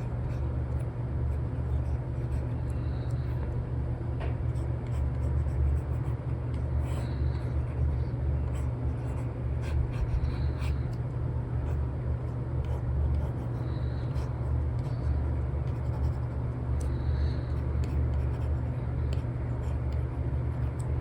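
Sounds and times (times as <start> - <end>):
stylus scratching on tablet: 0.0 - 3.4, 4.6 - 6.2, 8.4 - 11.0, 12.6 - 16.4, 17.8 - 20.8
low rumbling background noise: 0.0 - 21.0.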